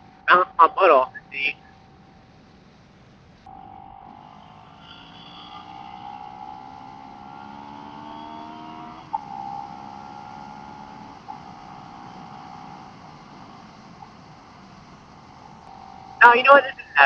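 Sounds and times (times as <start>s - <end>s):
motorcycle engine accelerating: 3.4s - 16.8s.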